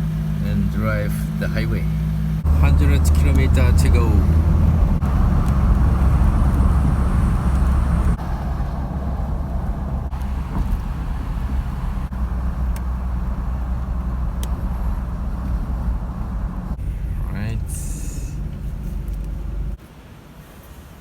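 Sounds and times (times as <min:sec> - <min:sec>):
road and engine rumble: 0:00.0 - 0:21.0.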